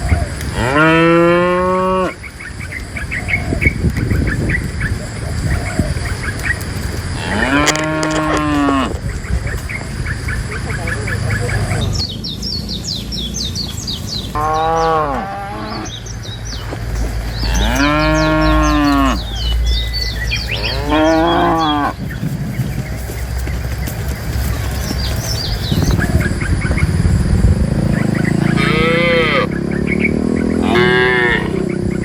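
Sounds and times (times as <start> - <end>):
cows mooing: 0.4 - 2.2, 7.0 - 9.0, 14.3 - 22.6, 28.0 - 31.8.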